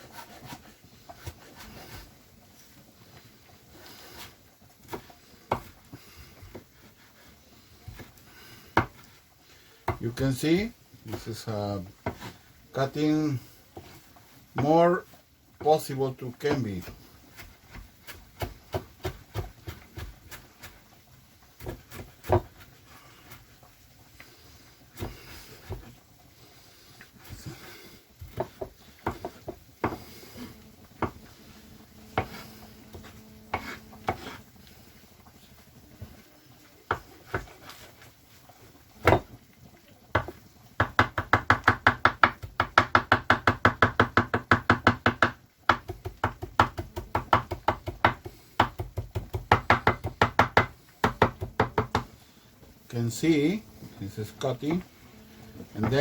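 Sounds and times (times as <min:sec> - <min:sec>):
knife chopping on cutting board: 0:33.0 - 0:34.4, 0:40.2 - 0:52.1.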